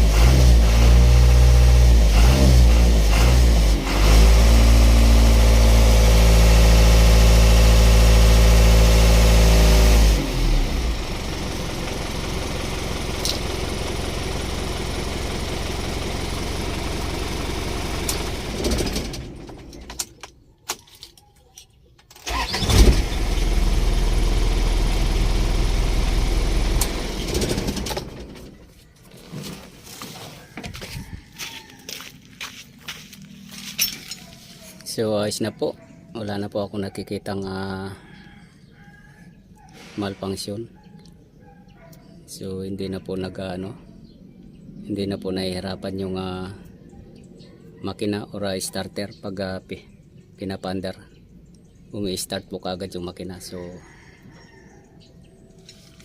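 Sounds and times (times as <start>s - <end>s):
diesel truck engine running: 0.0s - 20.0s, 22.2s - 28.8s
engine cranking and starting: 16.0s - 20.2s, 22.1s - 29.9s.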